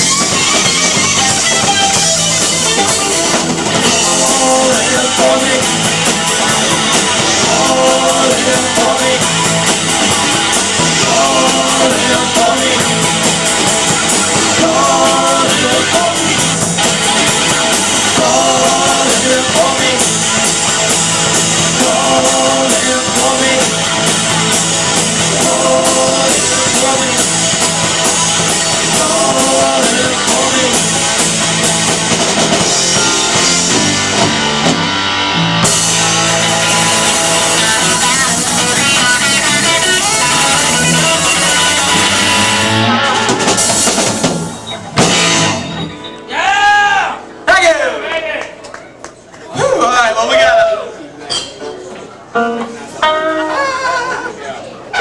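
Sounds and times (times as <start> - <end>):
rock band playing live: 0.0 - 47.8, 51.3 - 55.0.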